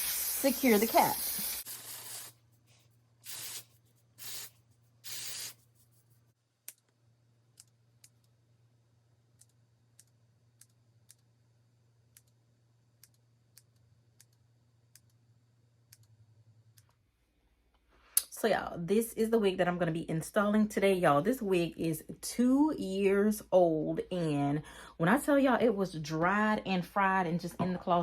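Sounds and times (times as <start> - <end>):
adhesive spray bursts: 0.0 - 2.4, 3.2 - 5.6.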